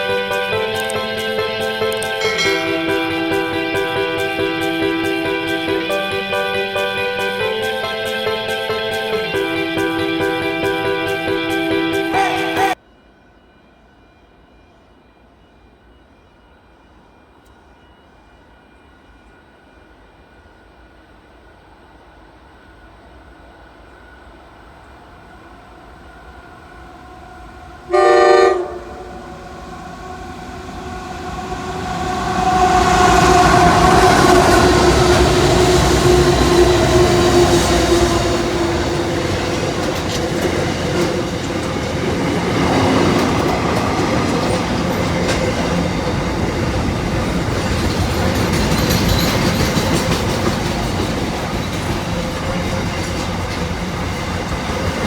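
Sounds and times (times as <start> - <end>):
locomotive horn blast: 0.0 - 12.8, 27.4 - 45.6
locomotive engines running under load: 27.6 - 55.0
wagon wheels rumbling on rails: 28.7 - 55.0.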